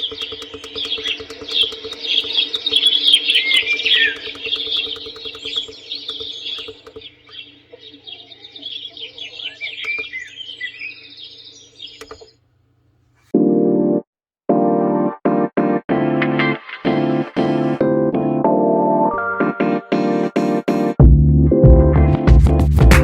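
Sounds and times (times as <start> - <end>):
recorded birdsong chirps and whistles: 0.0 - 13.2
steady low hum: 0.0 - 13.3.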